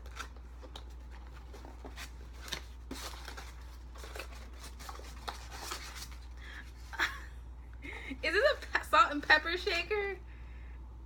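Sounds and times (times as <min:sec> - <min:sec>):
cardboard packaging rustling: 0:00.0 - 0:07.1.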